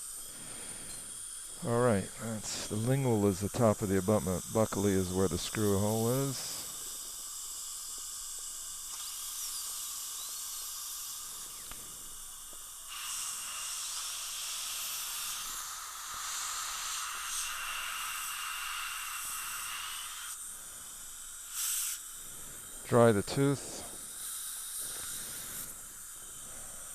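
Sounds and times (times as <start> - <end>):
dental drill whining: 0.0 - 26.9
dental suction hissing: 0.0 - 26.9.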